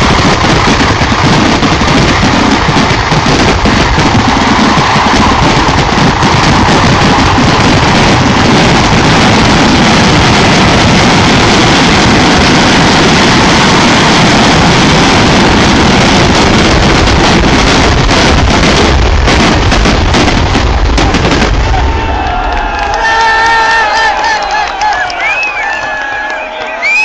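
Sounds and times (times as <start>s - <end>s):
fireworks barrage: 0.0s - 27.0s.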